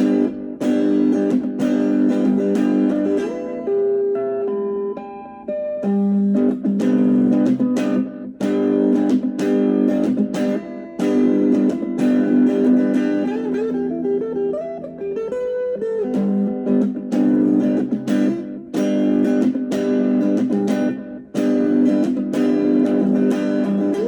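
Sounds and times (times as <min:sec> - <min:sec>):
guitar chords strummed: 0:00.0 - 0:24.0
picked guitar melody: 0:00.0 - 0:24.0.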